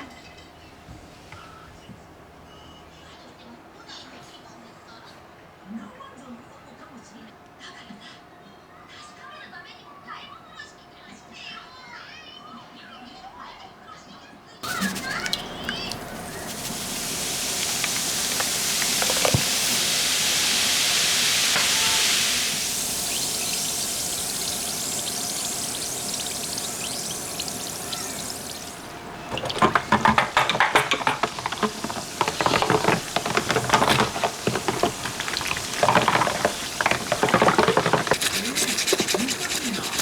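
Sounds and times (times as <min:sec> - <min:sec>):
brush scrubbing: 0:14.6 - 0:40.0
water running: 0:14.6 - 0:40.0.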